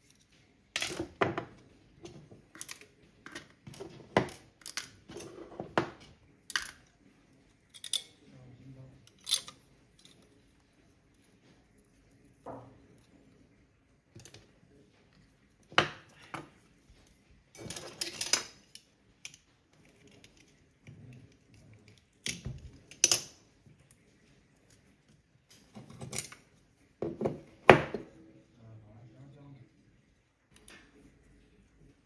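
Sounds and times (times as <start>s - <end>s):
tools clattering on workbench: 17.6s - 18.7s, 27.0s - 28.1s.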